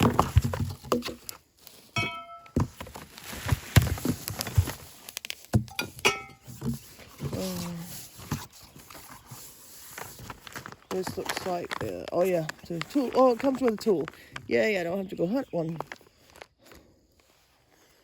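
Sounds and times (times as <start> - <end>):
plastic parts knocking in box: 0.0 - 1.4.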